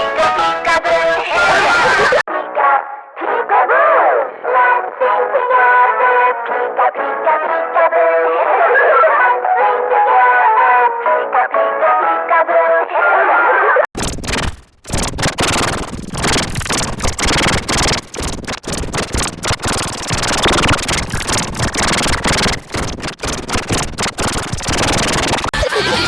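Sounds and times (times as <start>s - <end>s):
harsh distorted noise: 13.9s - 26.0s.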